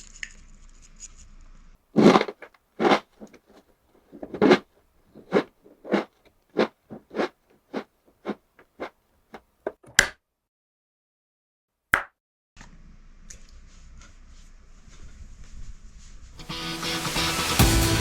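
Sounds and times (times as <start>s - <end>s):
crunchy biscuits being chewed: 2.0s - 8.9s.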